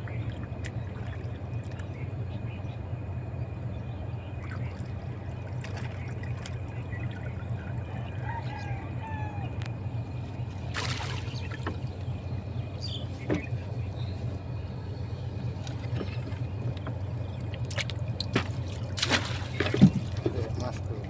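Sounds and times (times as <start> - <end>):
water splashing and trickling: 0.0 - 2.3, 4.3 - 8.4, 10.5 - 13.6, 15.0 - 21.0
steady low hum: 0.0 - 21.0.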